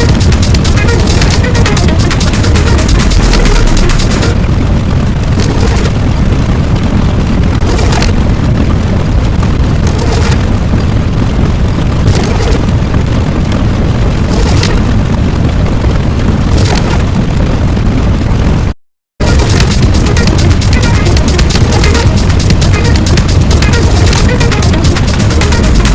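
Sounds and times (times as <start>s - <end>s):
sharp cracks: 0.0s - 4.5s, 19.3s - 25.9s
loud continuous rumbling: 0.0s - 25.9s.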